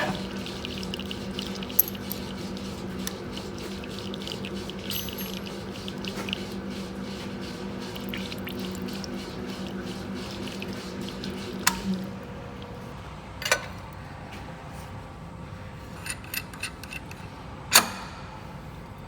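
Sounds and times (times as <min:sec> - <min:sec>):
coolant splash and cutting crackle: 0:00.0 - 0:13.0
lathe motor humming: 0:00.0 - 0:13.0.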